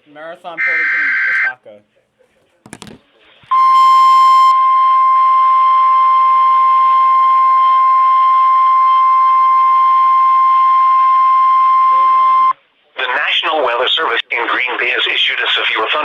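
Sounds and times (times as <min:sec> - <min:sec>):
steady loud alarm tone: 0:00.6 - 0:01.5
radio static hiss: 0:00.6 - 0:01.6, 0:11.8 - 0:16.0.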